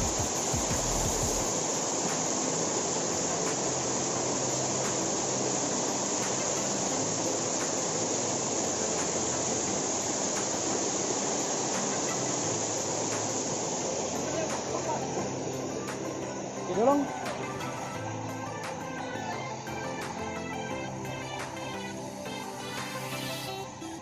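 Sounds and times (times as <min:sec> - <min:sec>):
high-pitched insect drone: 0:00.0 - 0:24.0
rushing water: 0:00.0 - 0:24.0.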